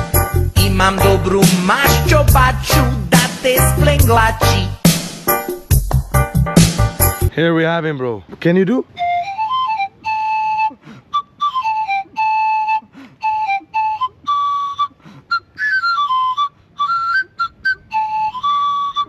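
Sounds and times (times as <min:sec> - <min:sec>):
whistle-like tune: 0:09.0 - 0:19.0.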